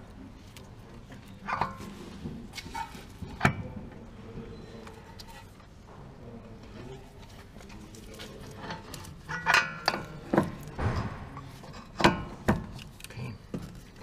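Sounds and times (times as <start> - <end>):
metal tools clinking and clanking: 8.1 - 10.7.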